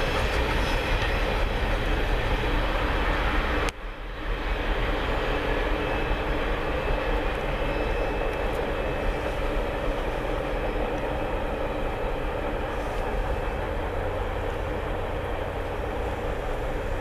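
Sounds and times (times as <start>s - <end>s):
freight train rumbling past: 0.0s - 17.0s.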